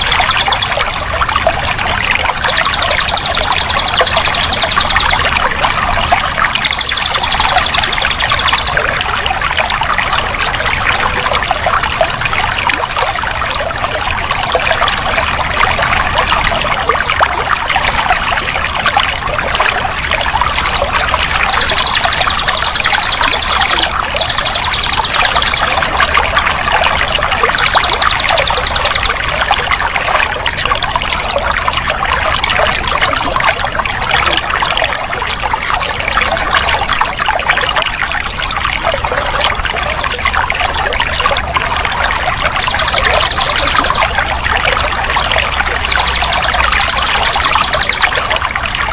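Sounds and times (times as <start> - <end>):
rapid high-pitched trill: 0.0 - 0.9, 2.4 - 5.4, 6.6 - 8.8, 21.5 - 26.2, 27.5 - 29.2, 42.6 - 44.3, 45.6 - 48.3
water trickling and pouring: 0.0 - 48.9.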